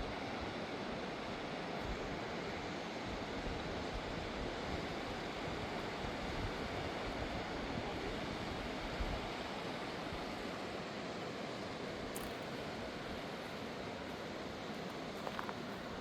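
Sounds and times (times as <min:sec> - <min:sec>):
river rushing: 0:00.0 - 0:16.0.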